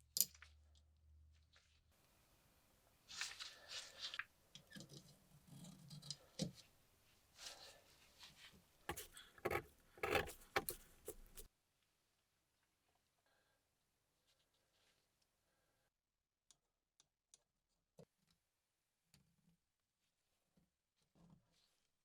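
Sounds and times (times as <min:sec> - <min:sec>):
pocket knife metal scrapes: 0:08.9 - 0:11.5.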